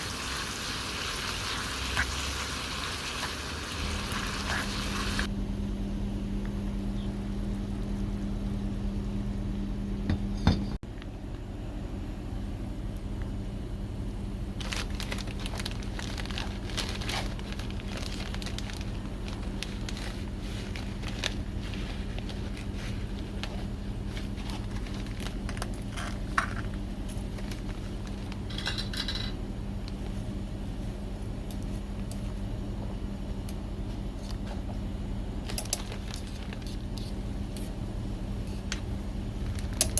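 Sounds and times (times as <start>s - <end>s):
steady low hum: 3.6s - 39.9s
tableware clatter: 28.5s - 29.4s.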